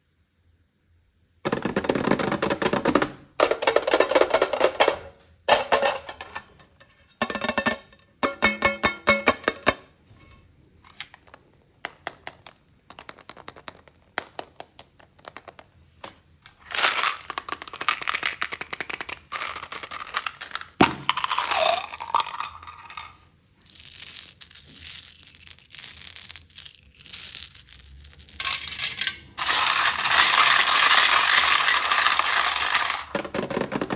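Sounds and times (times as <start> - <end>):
candy crunching and crackling: 16.6 - 22.9, 23.6 - 28.8.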